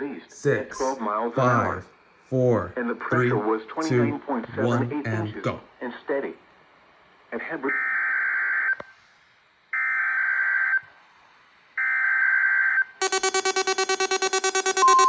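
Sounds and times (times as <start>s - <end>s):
pulsing electronic alarm: 11.8s - 15.0s
harsh digital data bursts: 13.0s - 15.0s.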